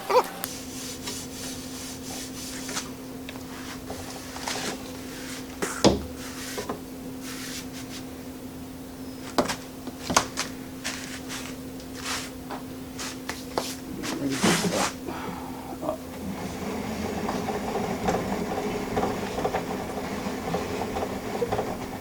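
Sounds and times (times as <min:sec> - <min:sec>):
steady low hum: 0:11.5 - 0:21.5.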